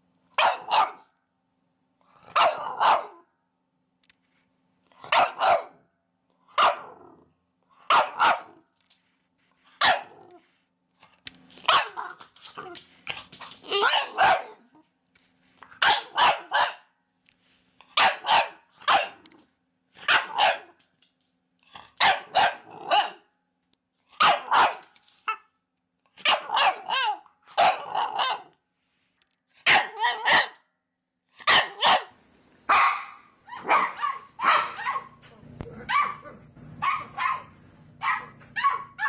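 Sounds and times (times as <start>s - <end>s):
puppies barking: 5.1s - 5.8s, 32.7s - 39.0s.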